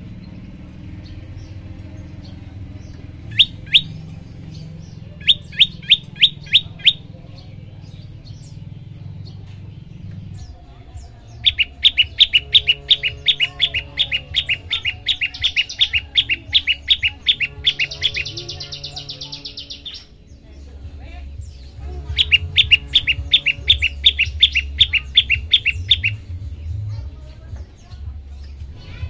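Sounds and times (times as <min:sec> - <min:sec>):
bird chirping and trilling: 0:00.5 - 0:09.4, 0:10.1 - 0:20.4, 0:21.4 - 0:26.8.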